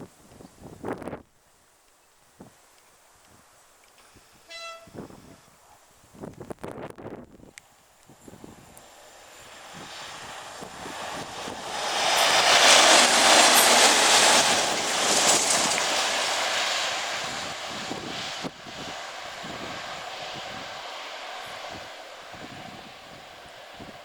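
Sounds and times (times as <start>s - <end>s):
diesel locomotives passing: 7.0s - 24.0s.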